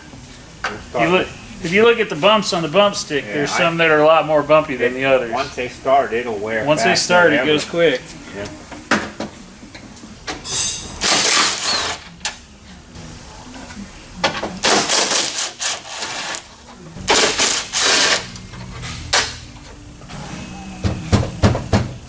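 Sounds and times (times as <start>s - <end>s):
ratchet rattling: 17.1s - 18.4s.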